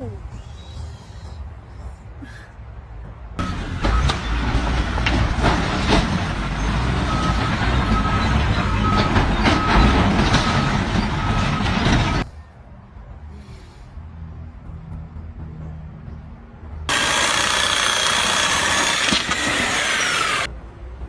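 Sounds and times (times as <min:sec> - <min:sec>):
reversing alarm beeping: 0:03.4 - 0:05.1, 0:06.5 - 0:12.2
knocks and clanks: 0:03.4 - 0:12.3
heavy vehicle engine running: 0:03.4 - 0:12.4, 0:14.2 - 0:21.0.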